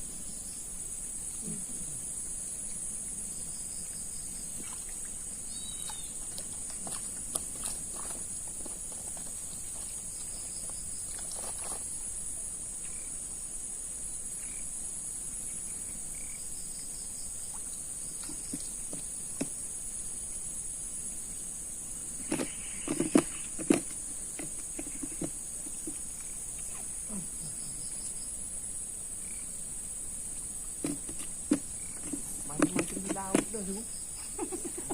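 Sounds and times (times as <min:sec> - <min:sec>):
insects droning: 0:00.0 - 0:34.9
sharp knocks and clatter: 0:22.2 - 0:26.0, 0:30.8 - 0:33.8.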